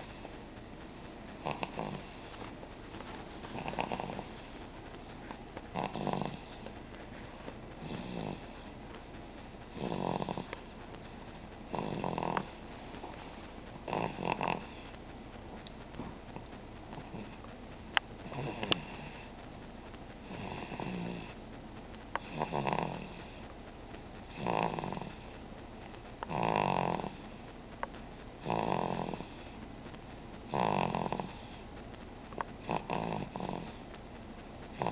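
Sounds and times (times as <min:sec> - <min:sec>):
baby snoring: 0:01.4 - 0:02.5, 0:03.4 - 0:04.7, 0:05.7 - 0:06.7, 0:07.8 - 0:08.7, 0:09.7 - 0:10.7, 0:11.7 - 0:15.0, 0:18.2 - 0:19.3, 0:20.2 - 0:21.4, 0:22.2 - 0:23.4, 0:24.3 - 0:25.4, 0:26.2 - 0:27.4, 0:28.4 - 0:29.6, 0:30.5 - 0:31.6, 0:32.6 - 0:33.8.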